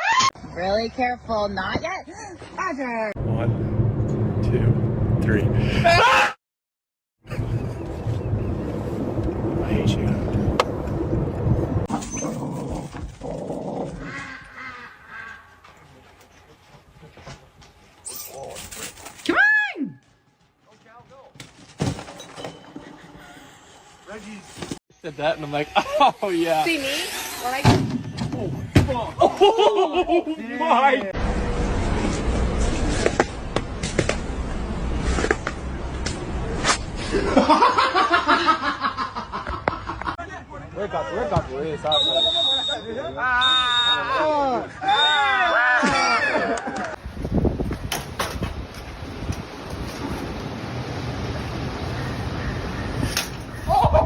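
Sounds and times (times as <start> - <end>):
low rumbling noise: 3.2 - 5.9, 7.3 - 11.9, 31.2 - 37.4
person laughing: 25.7 - 26.2, 29.2 - 30.4.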